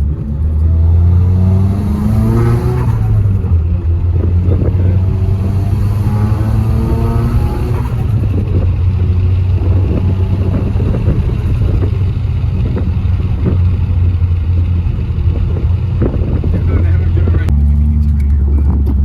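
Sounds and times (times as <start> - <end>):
car engine and exhaust running: 0.0 - 19.0.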